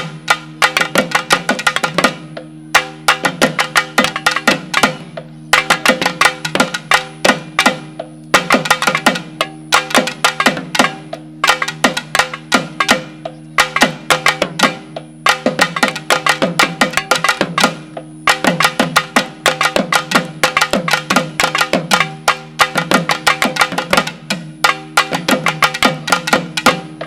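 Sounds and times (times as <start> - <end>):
rapid sharp drum strikes: 0.0 - 27.0
steady held low tone: 0.0 - 27.0.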